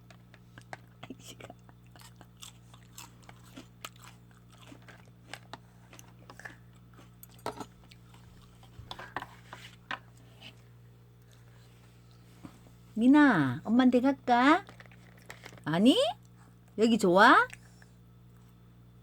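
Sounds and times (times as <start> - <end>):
low steady hum: 0.0 - 19.0
toddler chewing food: 0.6 - 12.2.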